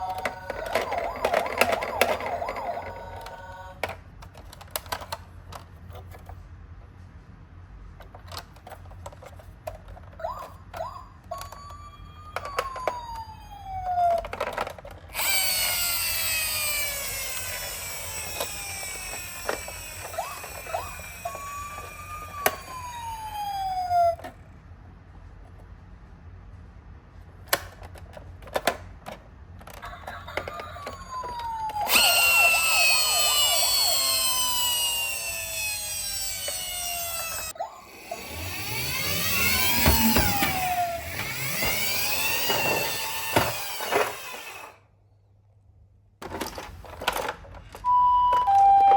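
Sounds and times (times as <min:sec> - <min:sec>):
toy siren rising and falling tone: 0:00.0 - 0:03.9, 0:10.2 - 0:24.3, 0:30.4 - 0:44.8, 0:47.9 - 0:48.9
toy cars clicking and rattling: 0:00.0 - 0:06.4, 0:08.0 - 0:24.3, 0:27.4 - 0:44.8, 0:46.2 - 0:47.8
harsh electronic siren sweep: 0:15.2 - 0:23.8, 0:31.8 - 0:44.6.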